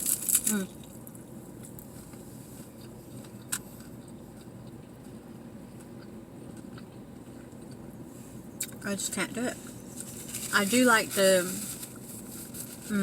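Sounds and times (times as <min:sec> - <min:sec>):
chewing food: 0:00.0 - 0:07.9
low background hum: 0:00.0 - 0:13.0.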